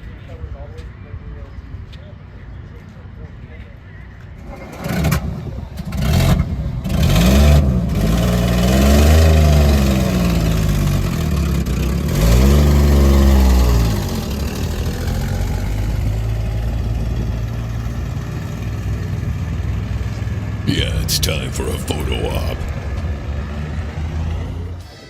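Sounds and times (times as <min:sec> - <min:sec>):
engine revving and idling: 0:05.9 - 0:18.0.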